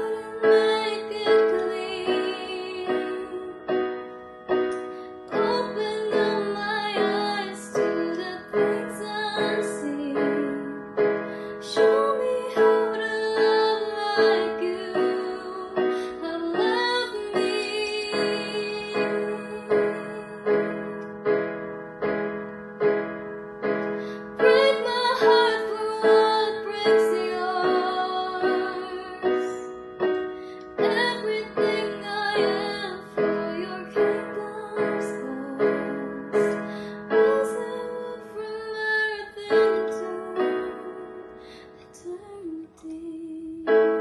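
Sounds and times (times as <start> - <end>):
piano accompaniment: 0.0 - 44.0
woman singing with vibrato: 11.6 - 20.8, 24.4 - 29.7, 30.8 - 41.2.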